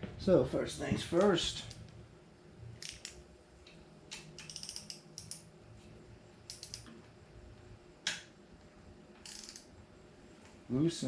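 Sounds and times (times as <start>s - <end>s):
ratchet clicking: 2.8s - 3.2s, 4.4s - 5.4s, 6.5s - 6.9s, 9.2s - 9.7s.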